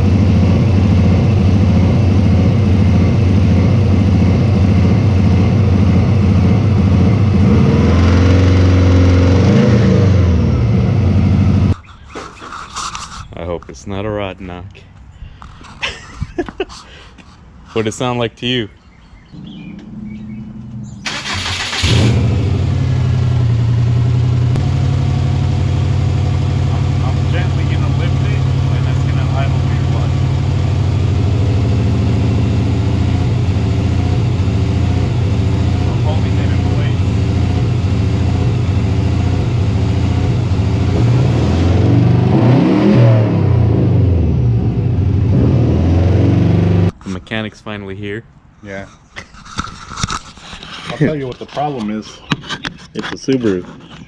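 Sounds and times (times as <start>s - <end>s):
car engine idling rough: 0.0s - 12.6s, 19.3s - 42.3s
car engine cranking: 19.3s - 47.0s.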